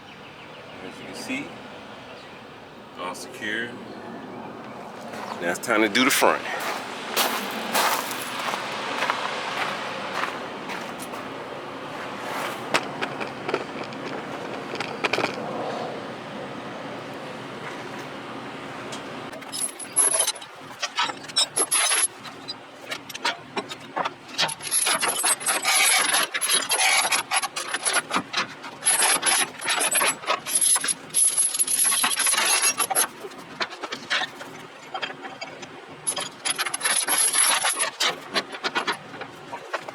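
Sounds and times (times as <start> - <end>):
steel chains clinking and scraping: 12.3 - 15.4, 19.4 - 23.7, 24.3 - 39.9.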